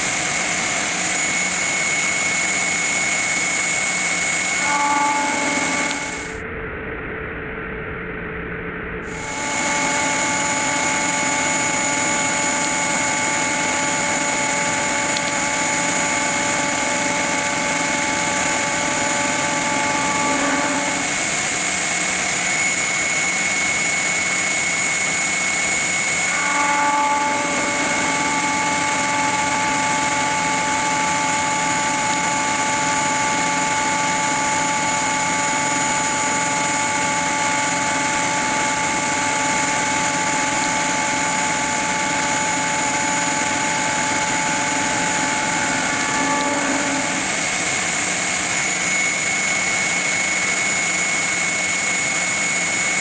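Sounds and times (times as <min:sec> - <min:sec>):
milling machine hum and hiss: 0:00.0 - 0:06.4, 0:09.1 - 0:53.0
high machine whine: 0:00.0 - 0:08.1, 0:08.7 - 0:53.0
evenly spaced pitched tones: 0:04.6 - 0:06.4, 0:09.1 - 0:21.7, 0:26.2 - 0:40.8, 0:41.4 - 0:48.3.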